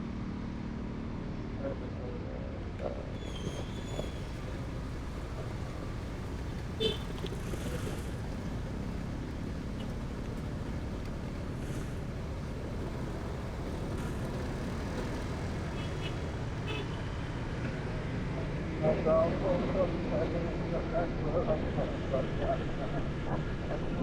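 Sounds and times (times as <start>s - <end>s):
motorcycle riding noise: 2.6s - 20.7s.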